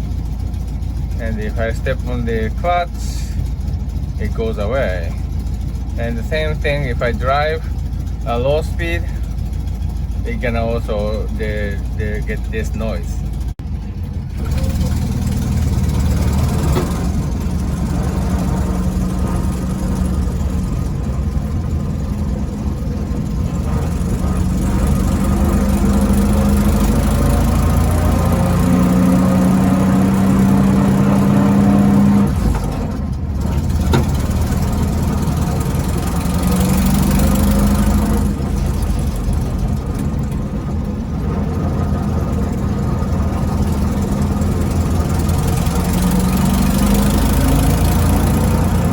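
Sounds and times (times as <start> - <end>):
car engine running: 0.0 - 48.9
low transmission hum: 0.0 - 48.9.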